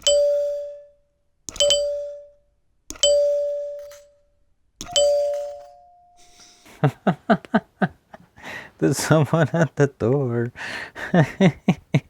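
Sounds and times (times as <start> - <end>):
electric door chime ringing: 0.0 - 6.4
solenoid plunger clicking: 2.9 - 4.0.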